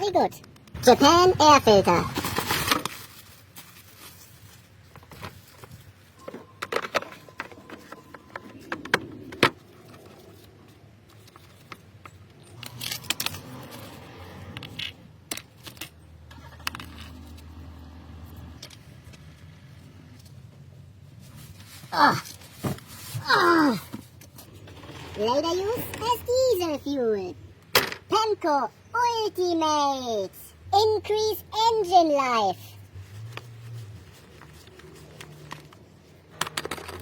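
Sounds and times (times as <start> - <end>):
tools and parts clinking: 5.0 - 10.5, 11.1 - 14.0, 14.6 - 17.5, 35.0 - 37.0.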